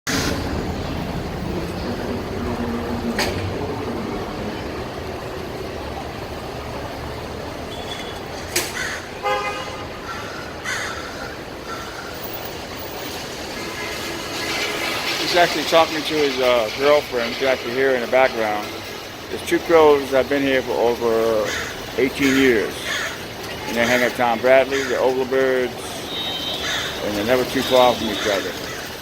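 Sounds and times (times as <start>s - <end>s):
traffic noise: 0.0s - 29.0s
crow cawing: 8.7s - 9.2s, 10.0s - 12.2s, 21.5s - 21.9s, 22.8s - 23.3s, 26.6s - 27.0s.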